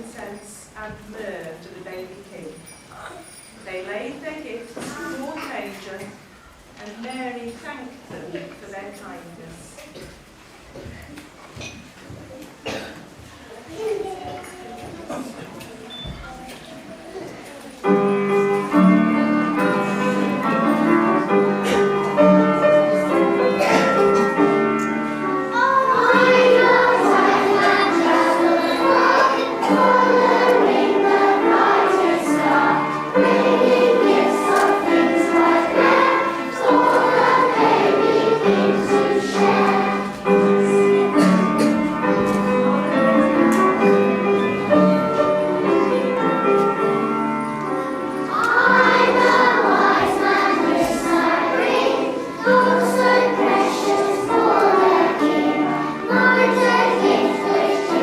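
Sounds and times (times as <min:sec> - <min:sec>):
children's choir singing: 0:14.4 - 0:58.0.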